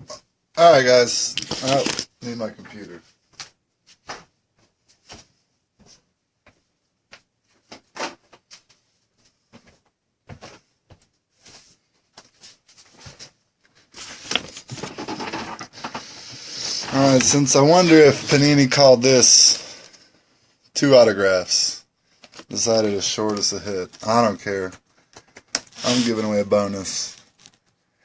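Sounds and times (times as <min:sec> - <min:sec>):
rustling: 0:10.4 - 0:17.6, 0:22.1 - 0:27.8.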